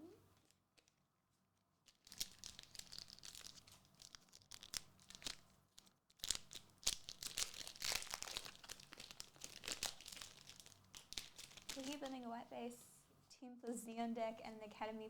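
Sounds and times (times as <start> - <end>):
foil wrappers tearing and crinkling: 1.8 - 12.2.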